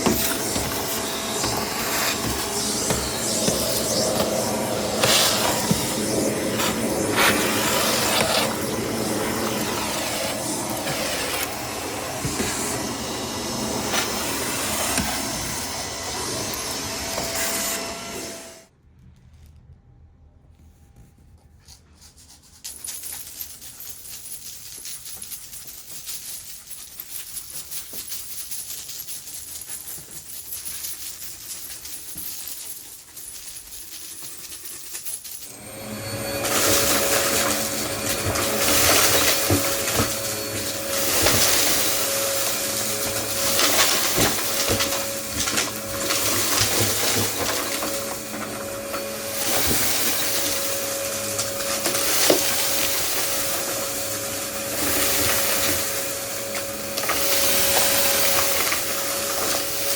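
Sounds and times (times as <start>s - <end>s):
vacuum cleaner running: 0.0s - 18.7s, 35.4s - 59.9s
debris clicking and rattling: 22.5s - 35.6s, 36.4s - 59.9s.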